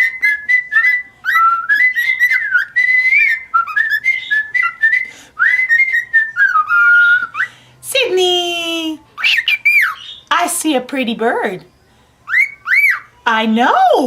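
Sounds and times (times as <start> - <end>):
cockatiel whistling a tune: 0.0 - 7.6, 9.2 - 10.3, 12.3 - 13.2.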